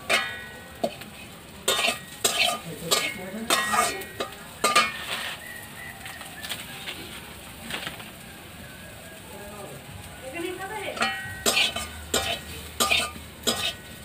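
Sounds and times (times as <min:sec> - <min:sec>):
metal clang: 0:00.0 - 0:01.0, 0:01.7 - 0:05.2, 0:11.0 - 0:13.9
metal spatula scraping a pan: 0:00.0 - 0:05.8, 0:10.9 - 0:14.0
spices sizzling in hot oil: 0:00.0 - 0:14.0.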